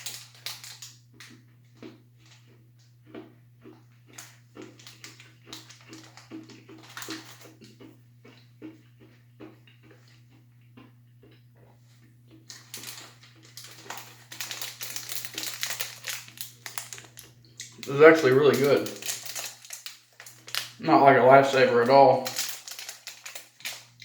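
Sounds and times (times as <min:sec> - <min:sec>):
candy package crackling: 0:00.0 - 0:02.4, 0:04.1 - 0:07.7, 0:12.5 - 0:24.0.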